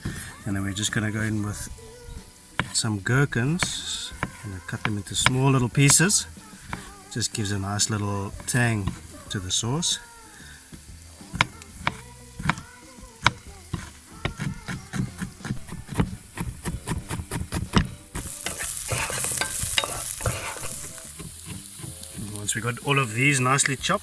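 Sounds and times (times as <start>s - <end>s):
onions sizzling in frying pan: 0.0s - 24.0s
knife chopping on cutting board: 2.6s - 2.8s, 3.6s - 7.5s, 11.3s - 22.4s.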